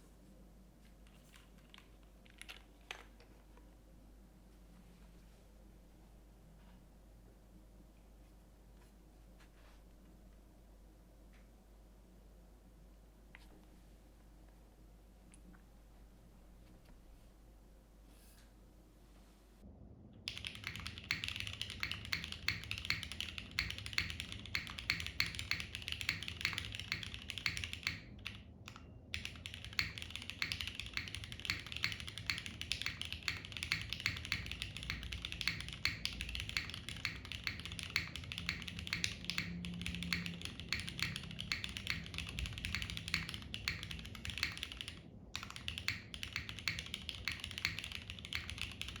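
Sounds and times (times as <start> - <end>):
fast mechanical keyboard typing: 1.1 - 3.2, 20.3 - 49.0.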